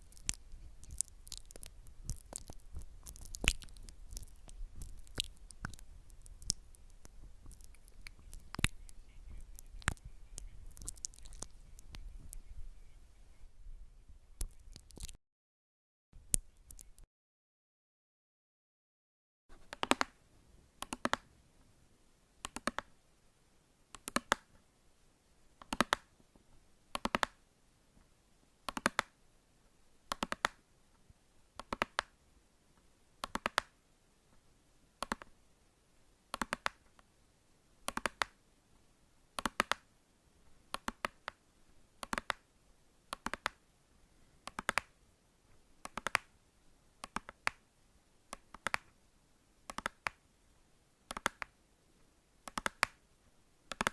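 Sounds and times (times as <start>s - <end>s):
sharp clicks: 0.0s - 12.4s, 19.6s - 20.2s, 20.8s - 21.2s, 22.4s - 22.9s, 24.0s - 24.5s, 25.6s - 26.1s, 27.0s - 27.4s, 28.7s - 29.1s, 30.1s - 30.6s, 31.6s - 32.1s, 33.2s - 33.7s, 35.0s - 35.3s, 36.4s - 37.0s, 37.9s - 38.4s, 39.4s - 39.8s, 40.7s - 41.4s, 42.0s - 42.4s, 43.1s - 43.6s, 44.4s - 44.9s, 45.8s - 46.3s, 48.3s - 48.9s, 49.7s - 50.2s, 51.1s - 51.5s, 52.5s - 53.0s, 53.7s - 53.9s.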